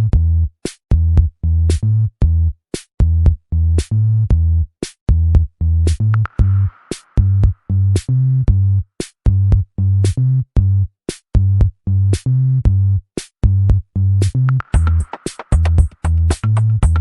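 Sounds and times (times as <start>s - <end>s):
pulsing synth bass: 0.0s - 17.0s
drum machine beat: 4.8s - 8.1s, 14.6s - 17.0s.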